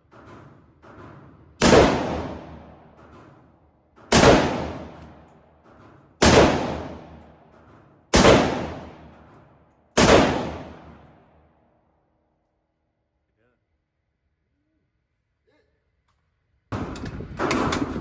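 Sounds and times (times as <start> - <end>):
gunshots: 1.6 - 2.7, 4.1 - 5.3, 6.2 - 7.2, 8.1 - 9.2, 10.0 - 11.1.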